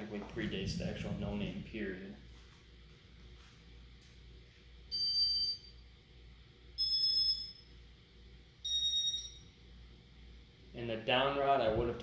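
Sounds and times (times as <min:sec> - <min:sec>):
short electronic beeps: 0:08.7 - 0:09.4.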